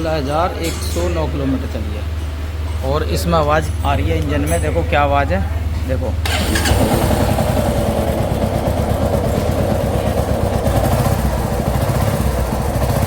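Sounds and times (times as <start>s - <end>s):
abnormal mechanical engine noise: 0.0s - 13.0s
motorcycle engine idling: 6.2s - 13.0s.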